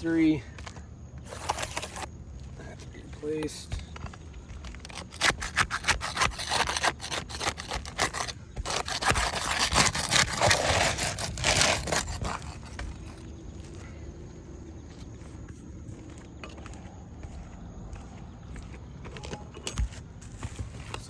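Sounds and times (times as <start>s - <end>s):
scraping on roof shingles: 0.4s - 21.0s.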